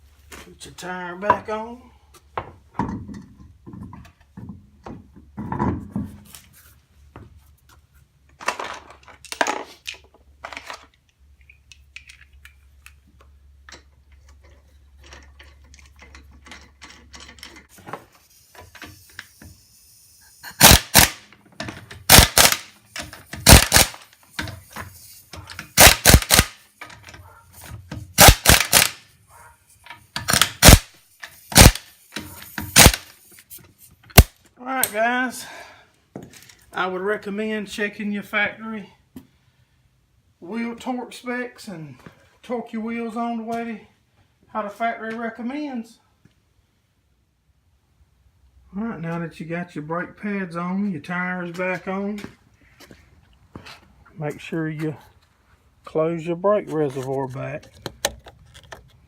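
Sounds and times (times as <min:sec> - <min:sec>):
clicks and handling of wheel: 0:07.7 - 0:19.6, 0:56.8 - 0:59.0
impact wrench rattling: 0:20.4 - 0:29.0, 0:29.8 - 0:34.3.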